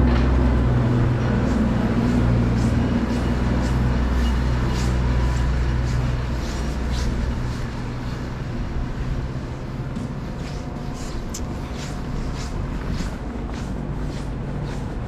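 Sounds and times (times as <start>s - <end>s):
footsteps crunching in snow: 0.0s - 15.0s
vehicle engine rumble: 0.0s - 15.0s.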